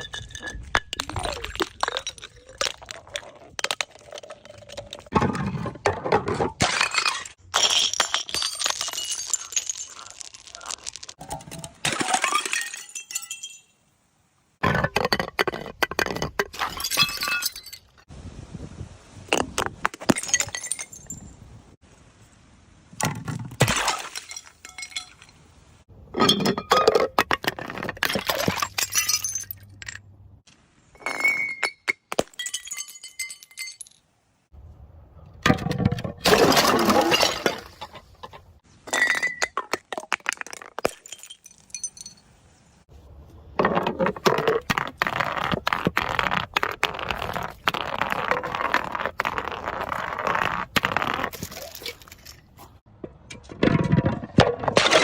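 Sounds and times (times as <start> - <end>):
glass bottles breaking: 6.2 - 13.8, 16.0 - 18.1, 20.0 - 21.3, 26.2 - 30.0, 31.0 - 34.0, 35.5 - 38.0, 38.8 - 42.3, 53.9 - 55.0
glass shards clinking: 6.8 - 11.6, 12.2 - 13.7.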